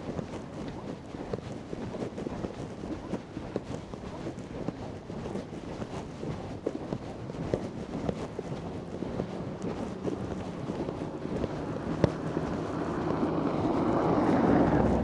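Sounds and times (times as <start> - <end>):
wind buffeting microphone: 0.0 - 15.0
crunching footsteps: 6.2 - 15.0.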